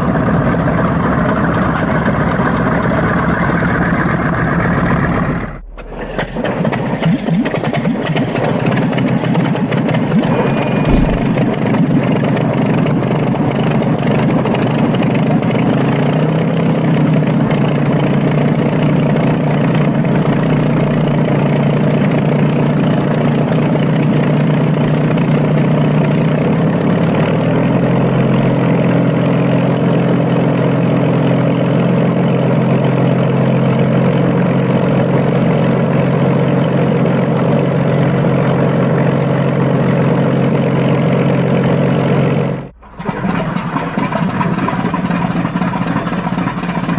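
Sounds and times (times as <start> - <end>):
old aircraft engine running: 12.4 - 46.9.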